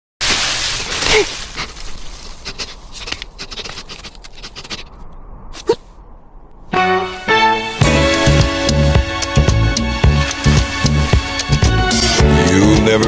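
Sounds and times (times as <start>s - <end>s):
cockatiel clicking and scraping: 1.6s - 5.0s
music: 6.7s - 13.0s.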